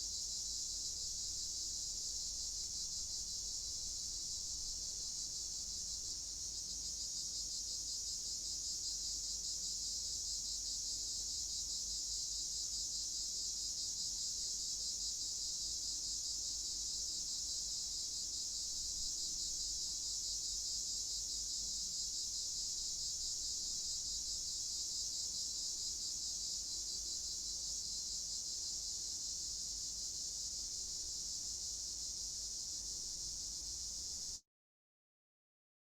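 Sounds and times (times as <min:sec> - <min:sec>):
crickets chirring: 0:16.2 - 0:34.4.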